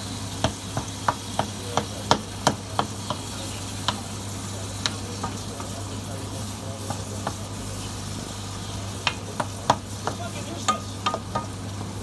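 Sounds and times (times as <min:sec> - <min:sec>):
chicken sizzling in a pan: 0:00.0 - 0:12.0
utensil knocking against pan: 0:00.4 - 0:04.2, 0:04.8 - 0:05.8, 0:06.8 - 0:07.5, 0:09.0 - 0:11.6.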